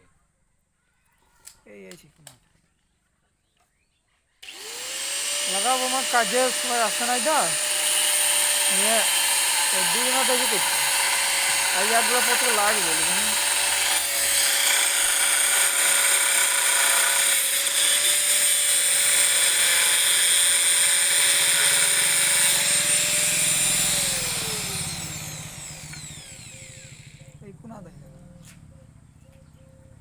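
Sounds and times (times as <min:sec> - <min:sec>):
power tool motor whining: 0:04.4 - 0:27.4.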